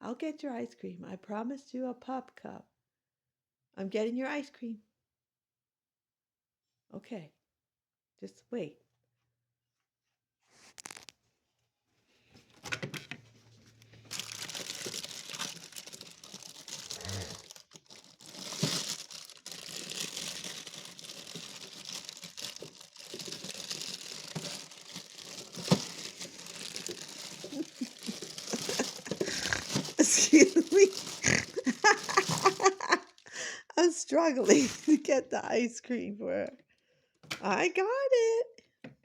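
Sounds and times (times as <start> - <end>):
plastic packaging crinkling: 10.6 - 11.2, 13.6 - 33.5, 34.4 - 35.1
frozen items knocking: 14.1 - 33.2.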